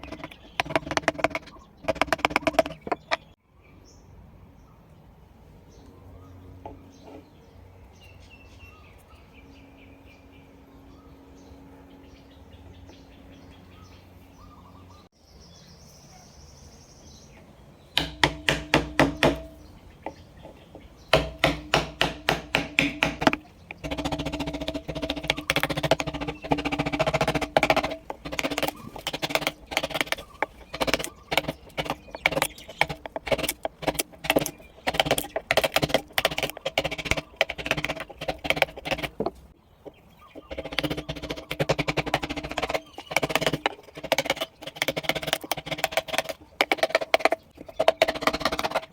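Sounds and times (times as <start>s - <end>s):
faint bird chirps: 8.0s - 17.5s
chisel tapped into wood: 18.0s - 28.8s.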